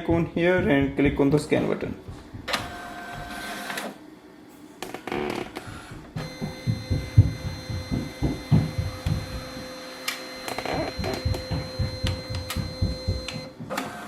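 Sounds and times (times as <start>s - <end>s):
scan motor high whine: 4.8s - 14.0s.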